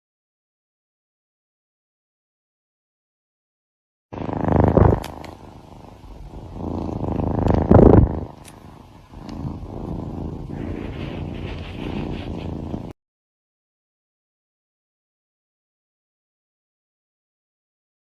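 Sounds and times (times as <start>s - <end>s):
cat purring: 4.2s - 13.0s.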